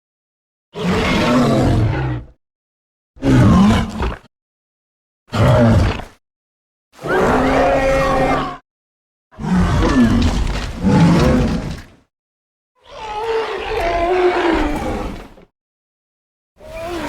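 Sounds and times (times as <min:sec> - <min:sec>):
dinosaur roaring: 0:00.8 - 0:02.4, 0:03.2 - 0:04.2, 0:05.3 - 0:06.0, 0:07.0 - 0:08.6, 0:09.3 - 0:11.9, 0:12.8 - 0:15.4, 0:16.6 - 0:17.0.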